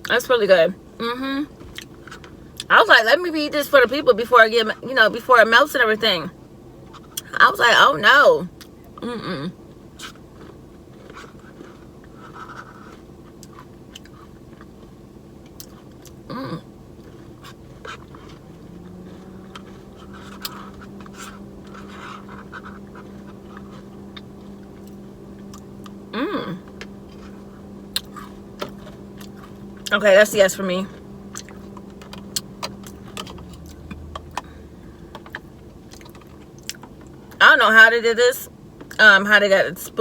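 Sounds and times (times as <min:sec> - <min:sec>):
steady low hum: 0:00.0 - 0:40.0
person chewing: 0:01.6 - 0:02.7, 0:10.0 - 0:29.9, 0:31.3 - 0:37.4.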